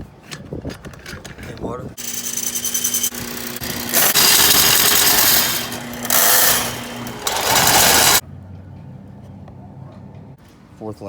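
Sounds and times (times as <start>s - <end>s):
electric power tool rattling: 2.0s - 8.2s.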